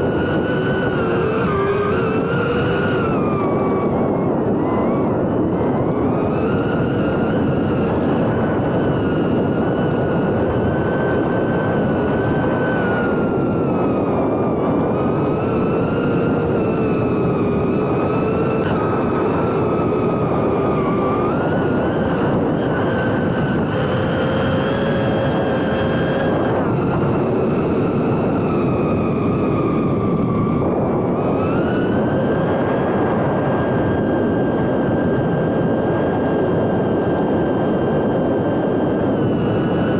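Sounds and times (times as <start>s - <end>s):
drone motors whining: 0.0s - 39.9s.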